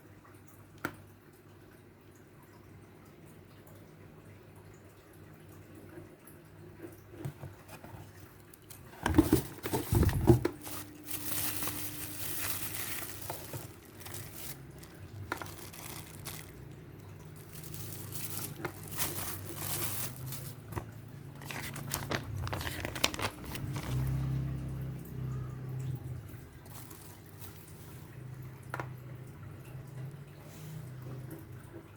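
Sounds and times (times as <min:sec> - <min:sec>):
packaging crinkling and tearing: 0:08.7 - 0:24.4, 0:26.6 - 0:27.8.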